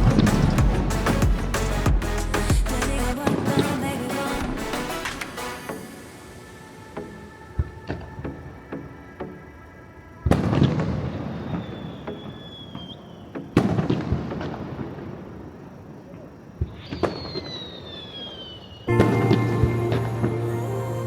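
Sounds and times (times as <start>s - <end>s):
descending firework whistle: 16.7s - 20.8s.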